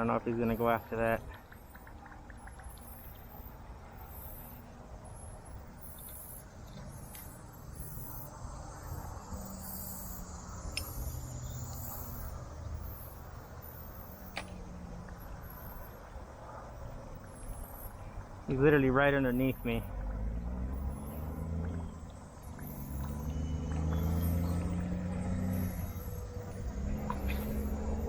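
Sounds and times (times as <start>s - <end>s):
small clicks: 0.4s - 4.6s, 10.1s - 13.2s, 21.1s - 28.0s
high-pitched insect chirping: 2.7s - 16.1s, 20.8s - 28.0s.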